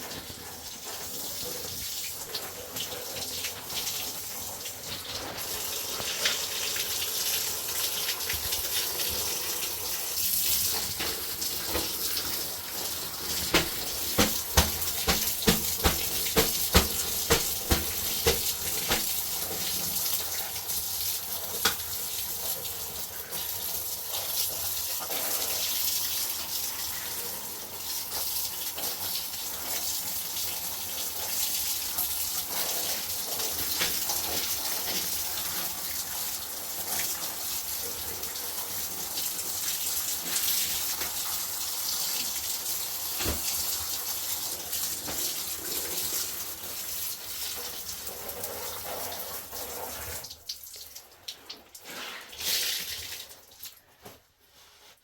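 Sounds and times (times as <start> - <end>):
water running: 0.0 - 53.9
sharp knocks: 13.5 - 19.2.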